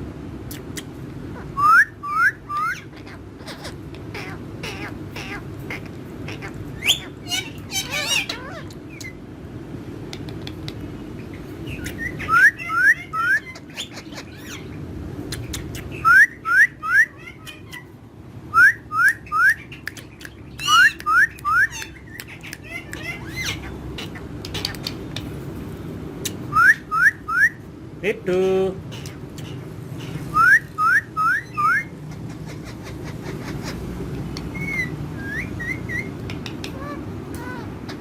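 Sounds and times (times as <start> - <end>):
parrots chirping: 0.5 - 27.9, 28.8 - 38.0
sharp clicks: 36.2 - 37.4.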